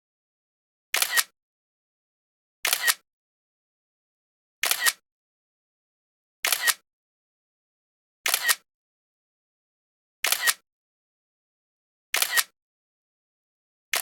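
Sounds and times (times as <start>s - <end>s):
camera shutter double click: 1.0s - 1.3s, 2.6s - 3.0s, 4.6s - 5.0s, 6.4s - 6.8s, 8.3s - 8.6s, 10.2s - 10.6s, 12.2s - 12.5s.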